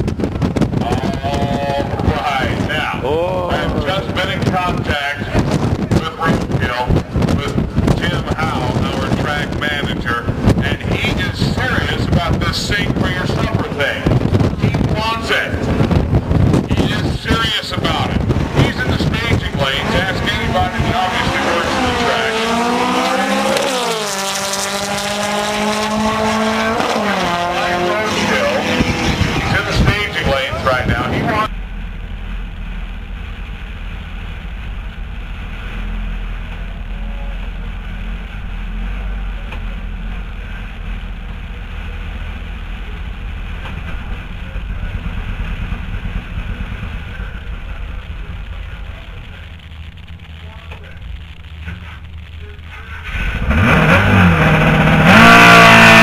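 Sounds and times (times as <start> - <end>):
car engine running hard: 0.0 - 56.0.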